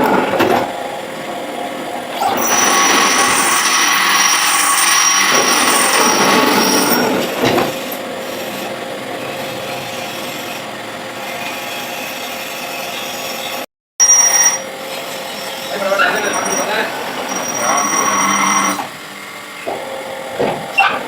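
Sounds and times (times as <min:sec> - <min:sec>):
lathe running: 0:00.2 - 0:13.6, 0:14.2 - 0:20.4
lathe tool scraping metal: 0:02.2 - 0:13.6, 0:14.4 - 0:19.0.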